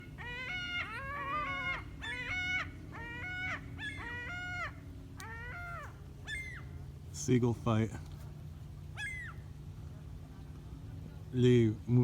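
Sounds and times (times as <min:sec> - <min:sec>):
seagulls squawking: 0:00.0 - 0:06.8, 0:09.0 - 0:09.4.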